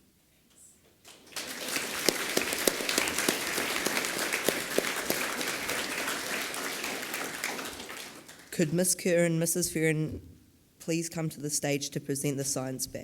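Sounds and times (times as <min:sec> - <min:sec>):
children applauding: 0:01.1 - 0:08.6.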